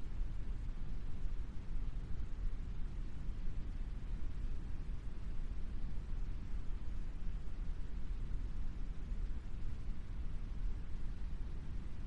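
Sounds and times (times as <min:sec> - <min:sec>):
brown noise hiss: 0:00.0 - 0:12.0.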